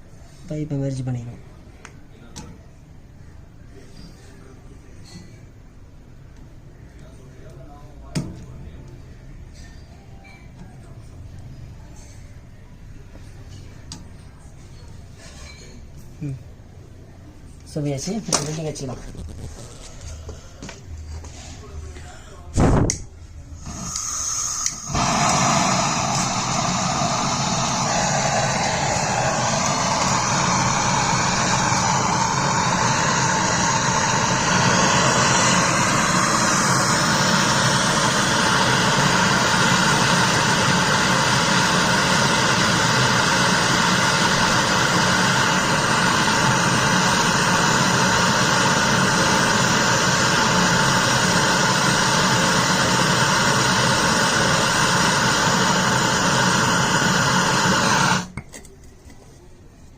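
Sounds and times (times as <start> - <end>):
torch flame rushing: 18.4 - 20.2, 23.6 - 58.3.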